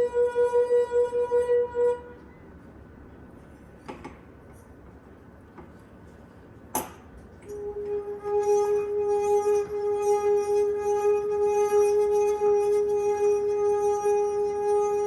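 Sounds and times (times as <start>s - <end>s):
wine glass singing: 7.5s - 15.0s.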